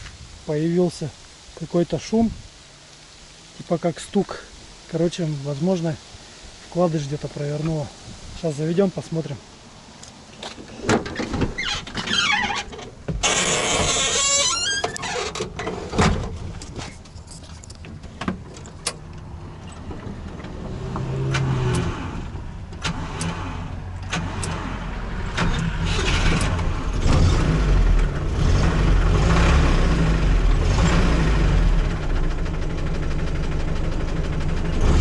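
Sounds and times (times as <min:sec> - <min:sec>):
car engine starting and running: 0:10.9 - 0:16.8, 0:17.8 - 0:35.0.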